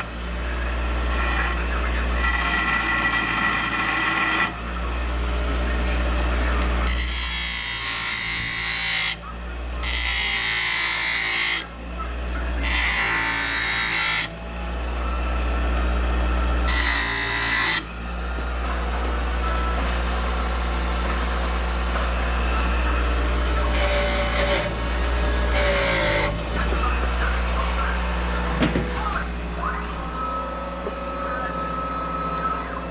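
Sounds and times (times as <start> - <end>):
power grinder grinding metal: 0.0 - 11.7, 12.5 - 14.4, 16.0 - 18.0, 21.6 - 27.7.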